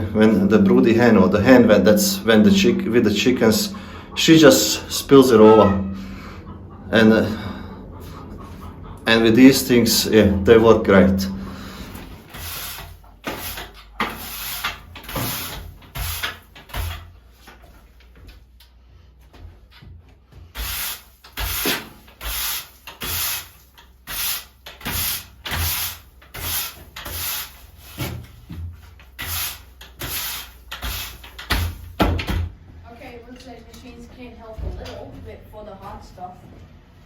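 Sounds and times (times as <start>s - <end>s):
scraping strokes: 11.6s - 17.0s, 20.6s - 31.8s.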